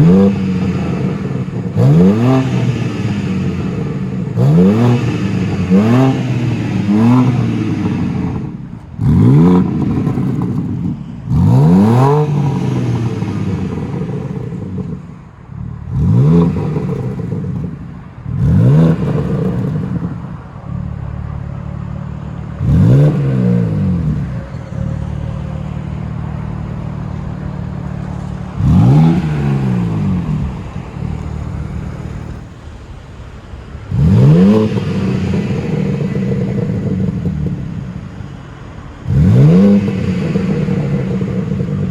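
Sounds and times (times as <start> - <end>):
car engine idling: 0.0 - 41.9
car engine revving: 0.0 - 41.9.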